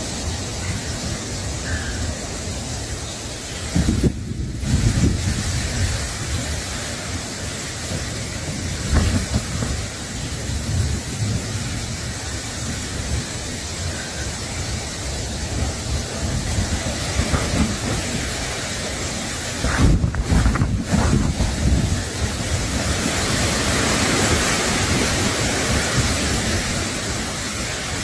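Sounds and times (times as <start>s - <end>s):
rushing wind: 0.0s - 28.0s
wind buffeting microphone: 3.6s - 28.0s.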